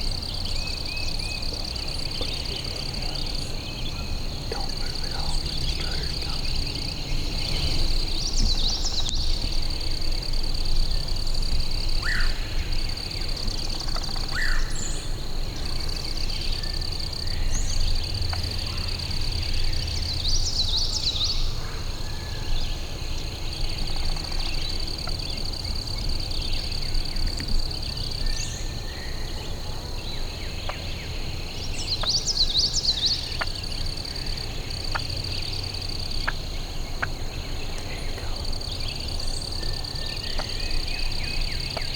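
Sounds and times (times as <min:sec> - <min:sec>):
songbird trilling: 0:00.0 - 0:10.1.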